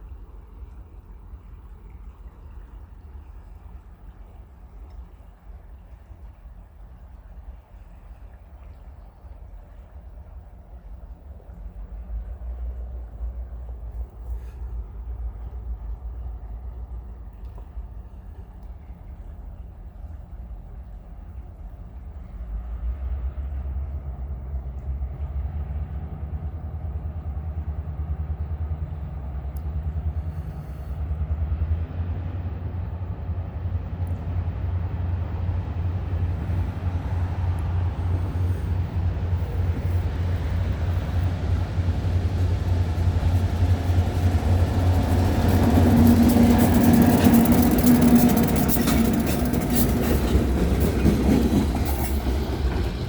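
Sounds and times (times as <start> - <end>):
diesel locomotive engine droning: 0.0 - 53.0
train hiss: 13.9 - 15.4, 29.7 - 53.0.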